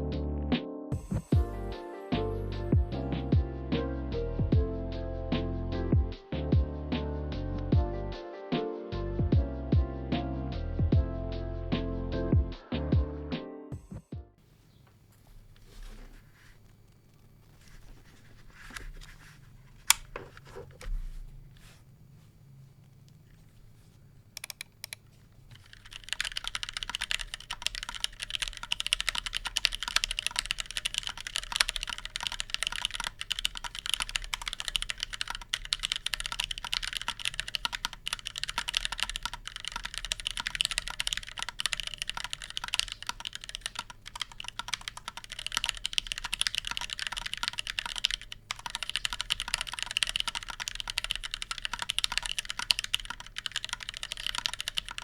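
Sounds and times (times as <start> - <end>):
fast mechanical keyboard typing: 15.3 - 22.2, 23.0 - 55.0.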